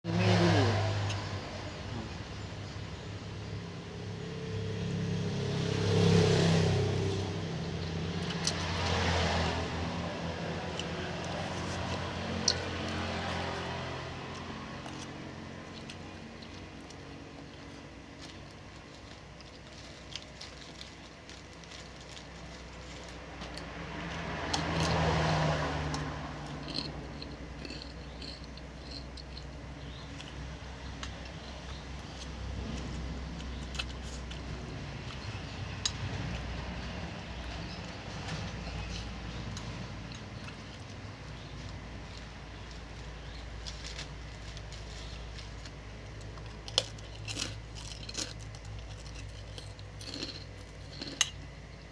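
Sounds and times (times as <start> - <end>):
vehicles passing by: 0.0 - 51.9
small clicks and scrapes: 31.0 - 51.5.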